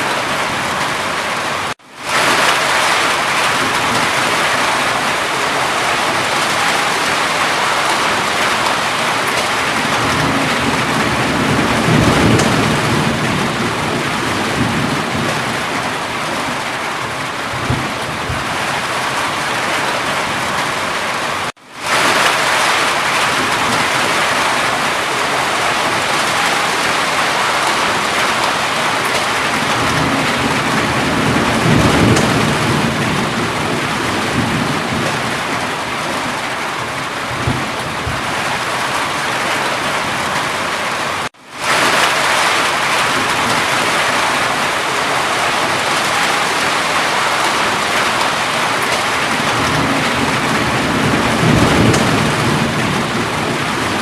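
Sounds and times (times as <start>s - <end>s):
heavy rain falling: 0.0s - 54.0s
thunder rumbles: 0.0s - 54.0s.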